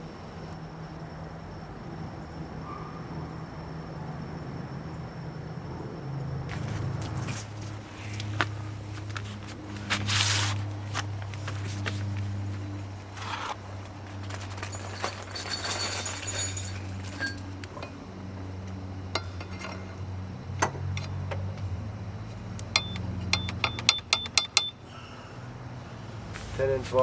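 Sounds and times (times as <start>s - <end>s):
metal tools clinking: 14.2s - 18.0s, 19.2s - 19.9s.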